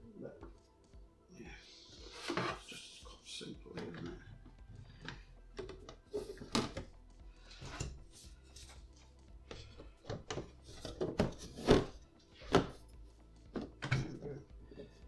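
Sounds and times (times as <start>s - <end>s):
background music: 0.0s - 15.0s
plastic panels clicking and knocking: 4.8s - 8.8s, 9.5s - 12.8s.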